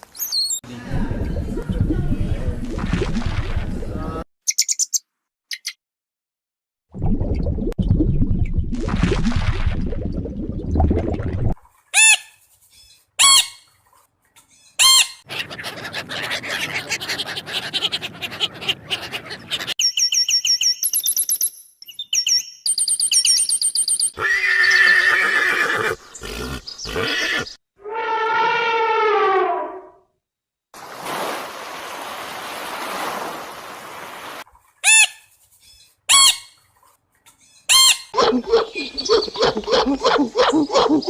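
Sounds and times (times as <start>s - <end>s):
animal calls: 14.8s - 19.8s, 24.2s - 29.6s, 37.7s - 41.0s.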